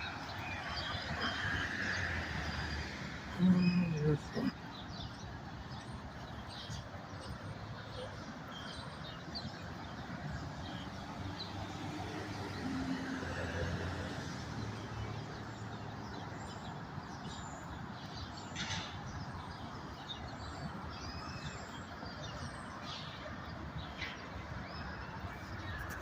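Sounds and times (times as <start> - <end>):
birds chirping and calling: 0.0 - 11.7
distant traffic hum: 0.0 - 26.0.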